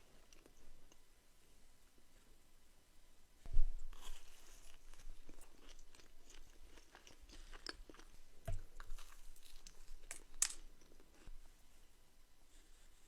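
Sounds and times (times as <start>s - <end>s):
chewing crunchy food: 3.9s - 11.4s.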